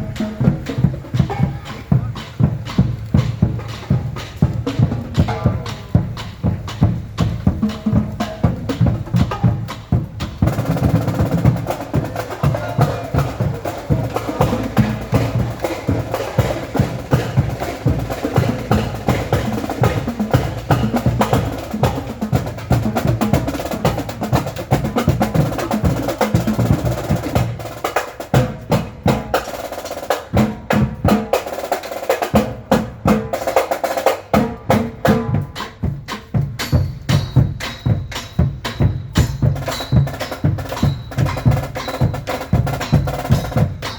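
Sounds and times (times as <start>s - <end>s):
loud music with percussion: 0.0s - 43.9s.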